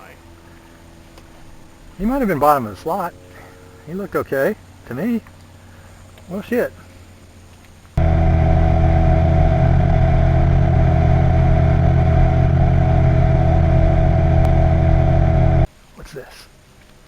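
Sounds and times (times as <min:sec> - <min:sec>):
outboard motor running: 0:08.0 - 0:15.7.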